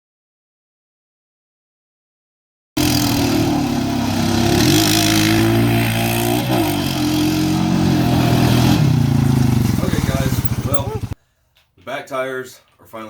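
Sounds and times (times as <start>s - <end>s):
atv engine running: 2.8s - 11.2s.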